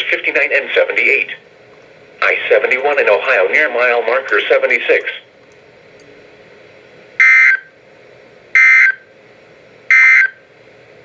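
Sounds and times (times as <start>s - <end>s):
faint radio hiss: 0.0s - 5.3s.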